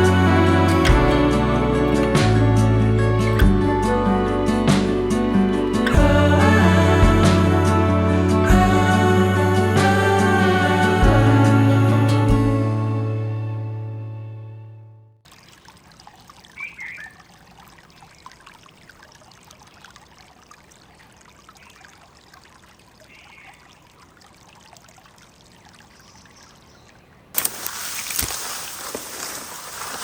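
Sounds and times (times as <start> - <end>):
faint outdoor ambience: 0.0 - 30.0
bird chirps: 16.5 - 17.2, 23.1 - 23.8, 25.9 - 27.2.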